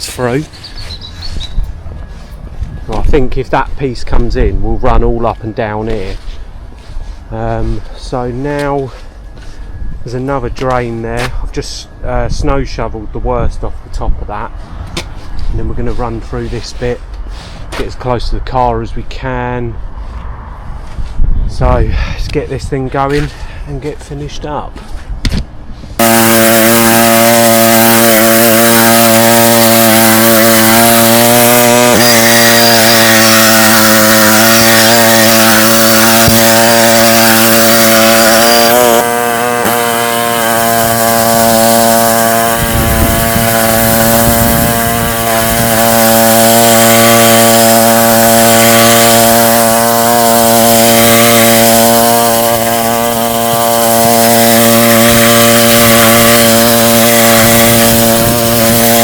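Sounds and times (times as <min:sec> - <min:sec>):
wire brush scrubbing tarmac: 0:15.2 - 0:18.0, 0:26.0 - 0:59.0.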